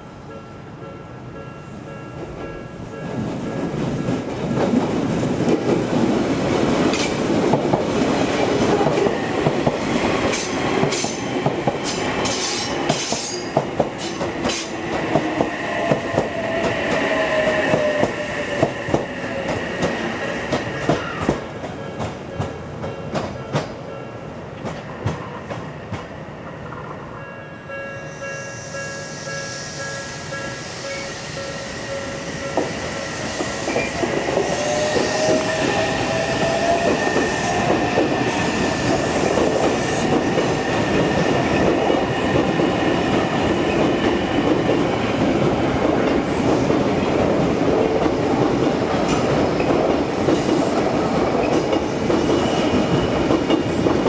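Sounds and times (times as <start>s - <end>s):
crossing warning bell ringing: 0.0s - 3.8s, 27.1s - 35.6s.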